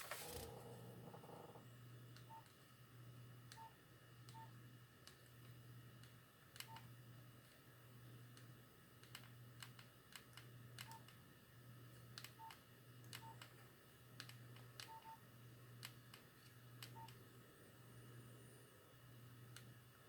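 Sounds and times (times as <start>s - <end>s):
faint low hum: 0.0s - 20.0s.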